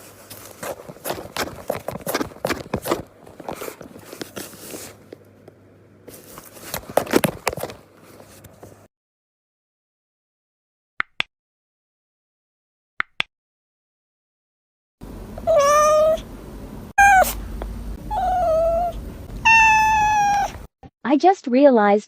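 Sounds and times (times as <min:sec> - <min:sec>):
cat meowing: 0:15.4 - 0:16.2, 0:17.0 - 0:17.4, 0:18.1 - 0:20.7.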